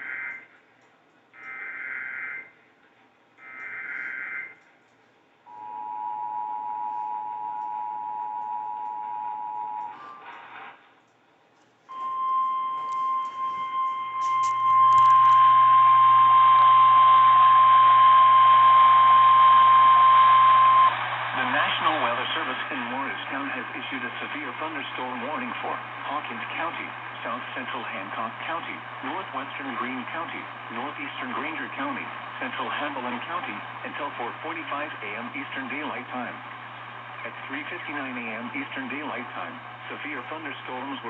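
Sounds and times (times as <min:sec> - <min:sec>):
two-tone attention signal: 0:11.9 - 0:21.7
radio hiss: 0:14.3 - 0:41.0.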